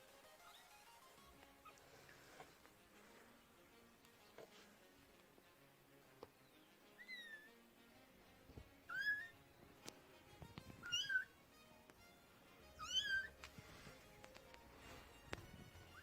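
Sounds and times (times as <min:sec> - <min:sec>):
kitten meowing: 0:08.9 - 0:09.4, 0:10.8 - 0:11.3, 0:12.8 - 0:13.4.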